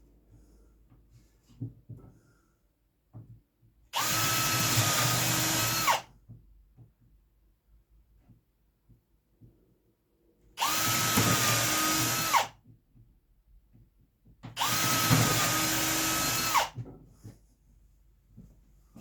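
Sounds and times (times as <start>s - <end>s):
electric drill whining: 4.0s - 6.0s, 10.6s - 12.5s, 14.6s - 16.8s.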